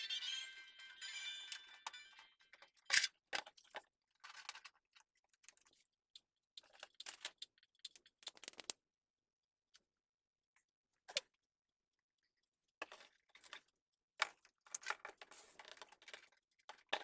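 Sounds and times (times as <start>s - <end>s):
computer parts and screws clinking: 0.0s - 2.3s
music: 0.0s - 2.5s.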